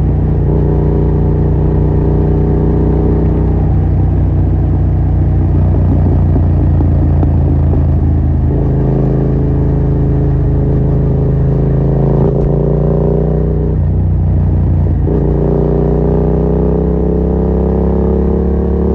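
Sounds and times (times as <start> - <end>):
motorcycle engine running: 0.0 - 18.9.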